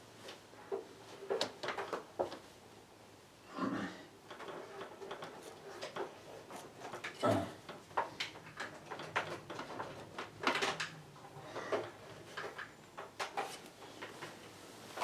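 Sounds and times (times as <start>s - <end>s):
small plastic and metal parts rattling: 4.3s - 14.4s.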